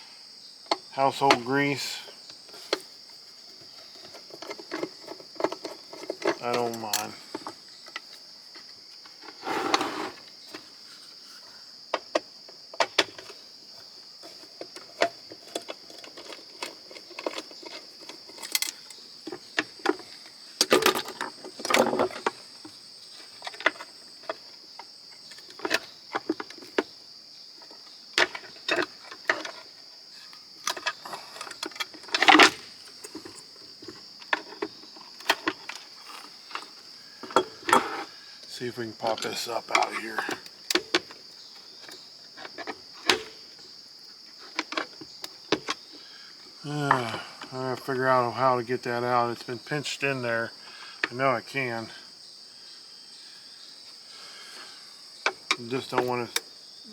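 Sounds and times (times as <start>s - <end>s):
screwdriver and parts clattering: 4.0s - 8.0s.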